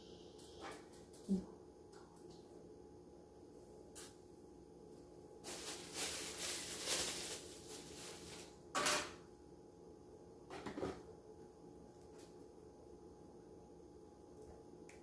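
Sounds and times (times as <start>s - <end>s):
paper packaging rustling: 5.4s - 8.6s
sharp paper crackle: 5.4s - 8.6s.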